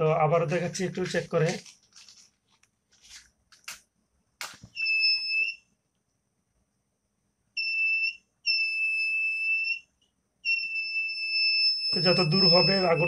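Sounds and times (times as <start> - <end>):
high-pitched alarm buzzer beeps: 10.5 - 13.0.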